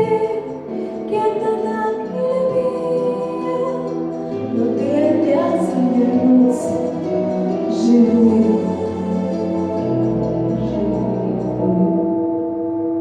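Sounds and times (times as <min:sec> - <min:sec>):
girl singing: 0:00.0 - 0:12.1
instrumental backing music: 0:00.0 - 0:13.0.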